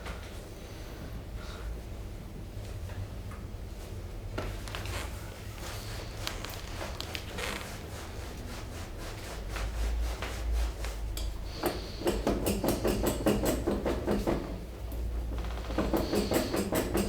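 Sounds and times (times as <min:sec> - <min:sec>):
hands rubbing over body: 0:04.8 - 0:11.1.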